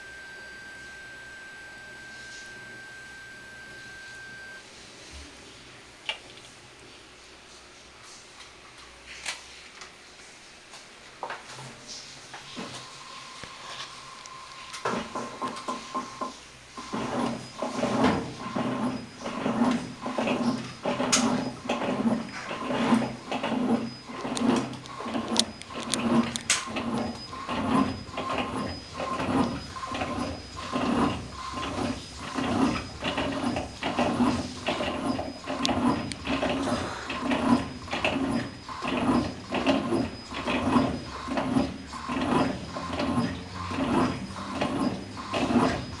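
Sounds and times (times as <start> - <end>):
washing machine churning: 11.3 - 46.0.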